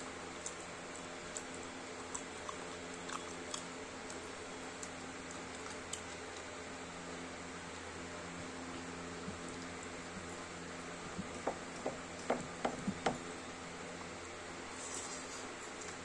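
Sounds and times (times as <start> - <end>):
steady background hiss and hum: 0.0 - 16.0
person chewing and eating: 0.3 - 6.7.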